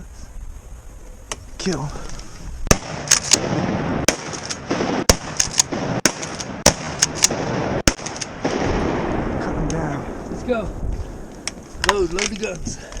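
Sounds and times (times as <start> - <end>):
shotgun shots: 2.7 - 10.2.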